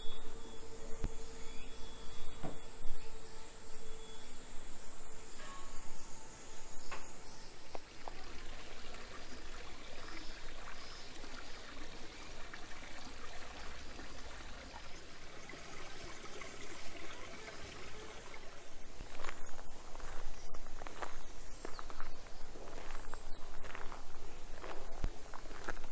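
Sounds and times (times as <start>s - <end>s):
stream babbling: 7.2s - 21.0s.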